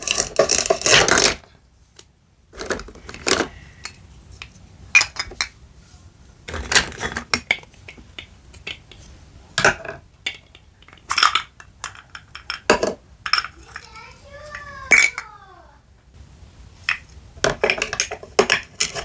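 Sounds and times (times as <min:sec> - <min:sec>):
toy kitchenware clacking: 0:09.6 - 0:15.3
toy kitchenware clattering: 0:09.6 - 0:15.3, 0:17.5 - 0:19.0.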